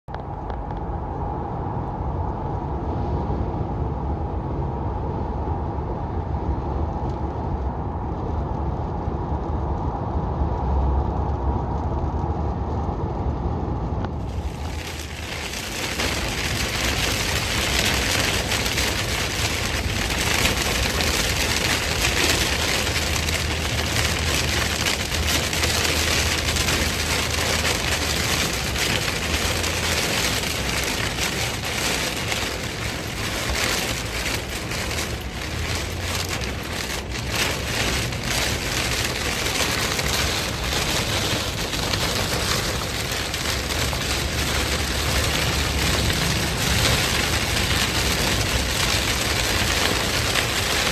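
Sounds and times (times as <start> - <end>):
low rumble: 0.1 - 50.9
heavy rain falling: 14.2 - 50.9.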